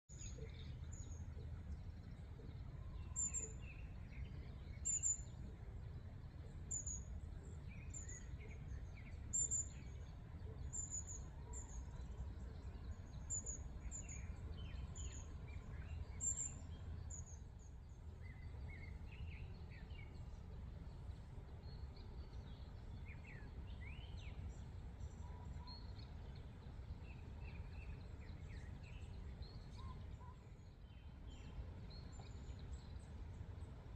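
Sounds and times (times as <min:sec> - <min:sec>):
low outdoor rumble: 0:00.1 - 0:33.9.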